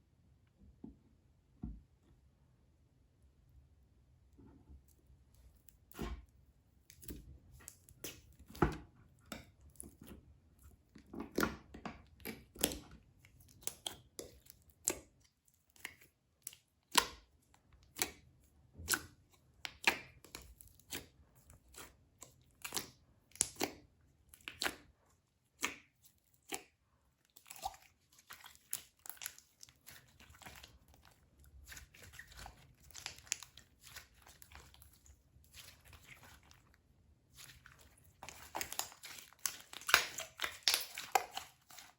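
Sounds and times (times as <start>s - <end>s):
slime popping and crackling: 38.2s - 41.9s.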